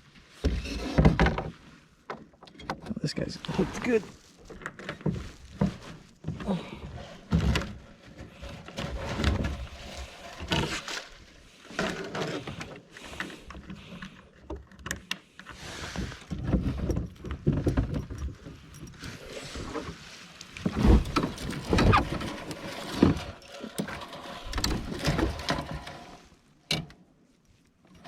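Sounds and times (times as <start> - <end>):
fishing gear knocks and thumps: 16.0 - 22.2.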